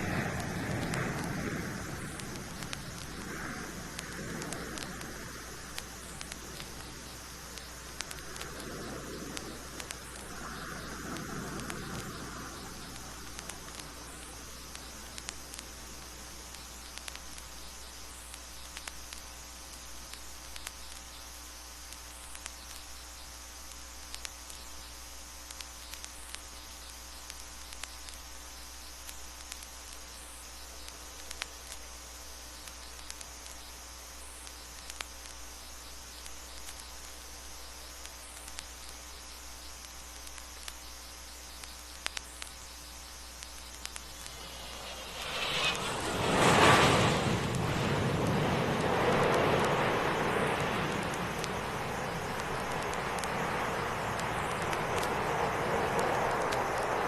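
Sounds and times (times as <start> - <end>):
steady hum: 0.0 - 57.0
vinyl crackles and clicks: 0.0 - 57.0
faint soft rushes: 44.2 - 52.5.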